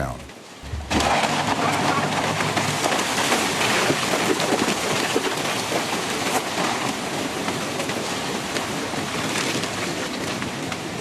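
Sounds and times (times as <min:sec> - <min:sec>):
heavy water hiss with crackles: 0:00.0 - 0:11.0.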